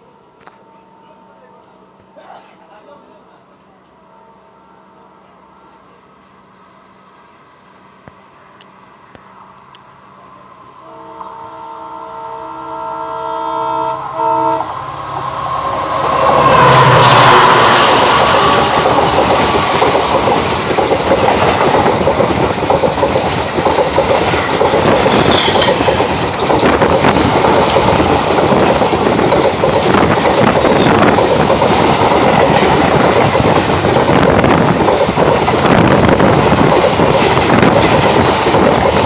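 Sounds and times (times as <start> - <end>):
train wheels rushing on rail: 13.9 - 39.0
clickety-clack over rail joints: 16.0 - 39.0.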